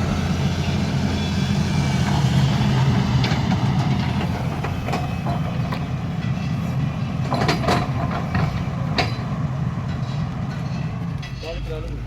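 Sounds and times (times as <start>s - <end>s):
heavy diesel engine running: 0.0s - 12.0s
metallic clanks and knocks: 3.2s - 11.8s.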